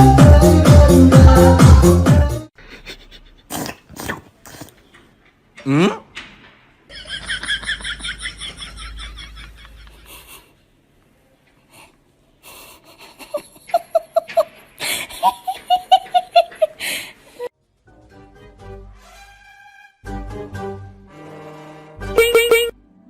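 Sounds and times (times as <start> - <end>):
music: 0.0 - 2.5, 17.6 - 23.0
high-pitched giggling: 13.0 - 16.8, 22.2 - 22.7.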